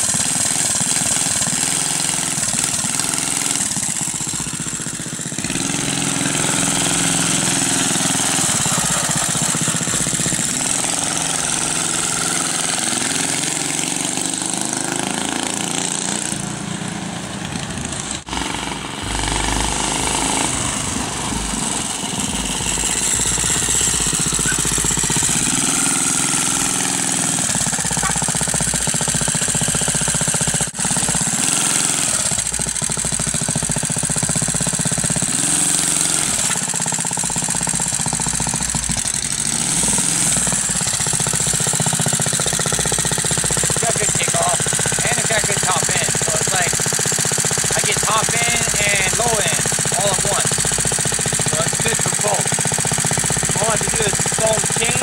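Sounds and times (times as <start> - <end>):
small single-cylinder engine running: 0.0 - 55.0.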